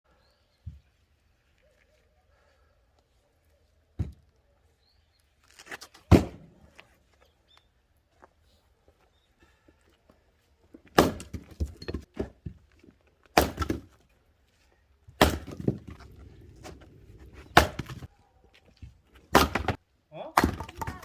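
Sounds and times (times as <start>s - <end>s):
axe splitting logs: 6.1s - 6.5s, 10.9s - 12.6s, 13.2s - 14.0s, 15.1s - 18.1s, 19.2s - 21.0s.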